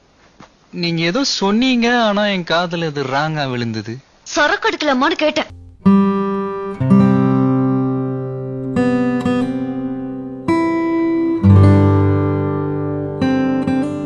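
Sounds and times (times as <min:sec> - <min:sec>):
acoustic guitar chords strummed: 0:05.5 - 0:14.0.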